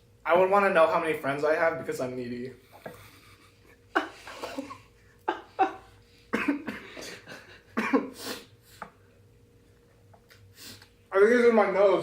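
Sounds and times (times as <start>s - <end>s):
person coughing harshly: 4.4s - 8.5s.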